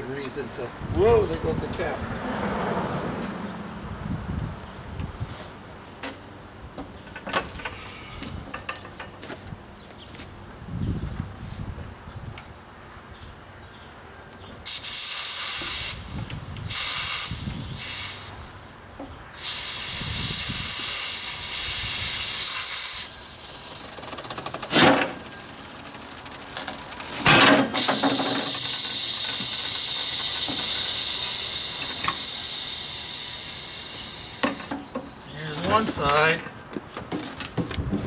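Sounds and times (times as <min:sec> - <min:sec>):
air hissing from tire valve: 0:14.6 - 0:26.4, 0:27.7 - 0:34.9.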